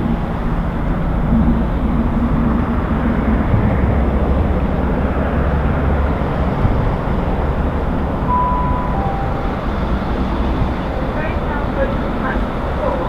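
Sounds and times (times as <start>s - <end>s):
train rumbling past: 0.0s - 13.0s
brief high tones: 8.3s - 10.4s.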